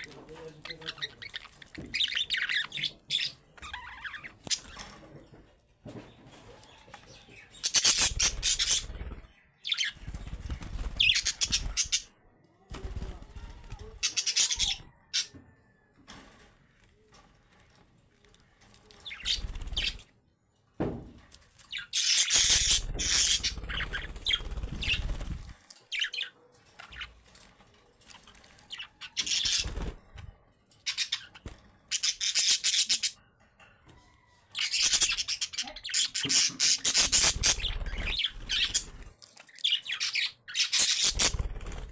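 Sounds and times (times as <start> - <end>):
budgerigars chattering and chirping: 0.0 - 4.9, 7.0 - 12.1, 14.0 - 15.3, 19.1 - 20.0, 21.7 - 27.1, 28.7 - 30.0, 30.8 - 33.2, 34.6 - 41.9.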